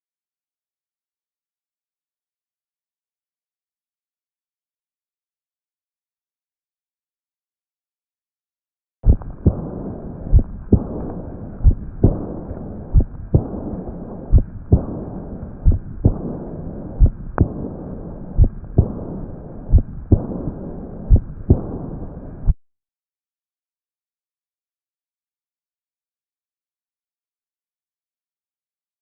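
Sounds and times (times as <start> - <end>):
diastolic heart murmur: 9.0 - 21.8
heartbeat: 9.0 - 22.6.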